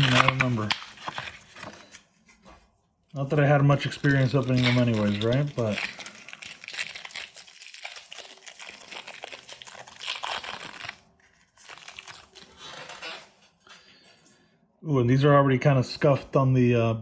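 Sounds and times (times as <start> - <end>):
plastic packaging crinkling and tearing: 0.0 - 2.2, 3.2 - 13.4.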